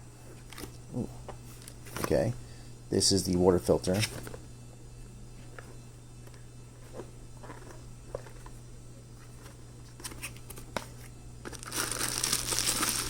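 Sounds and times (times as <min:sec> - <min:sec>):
plastic wrapping crinkling: 0:11.4 - 0:13.0.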